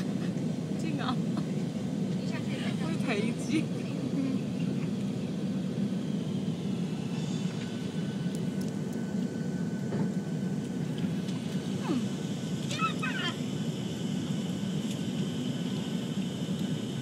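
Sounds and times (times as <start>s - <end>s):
airliner cabin engine rumble: 0.0s - 17.0s
faint thin whine: 4.9s - 17.0s.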